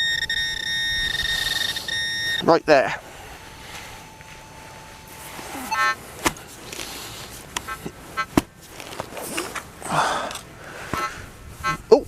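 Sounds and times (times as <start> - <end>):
metal detector beep: 0.0 - 6.0
metal detector buzz: 0.0 - 6.0.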